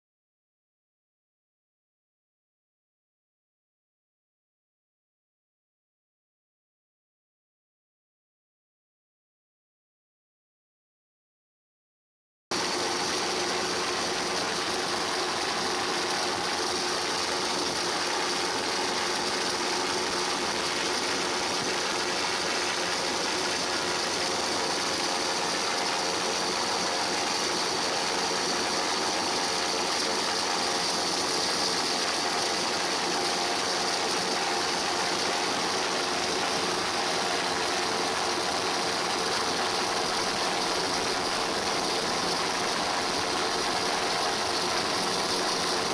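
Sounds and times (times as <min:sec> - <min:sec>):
engine drone with hiss: 0:12.6 - 0:45.9.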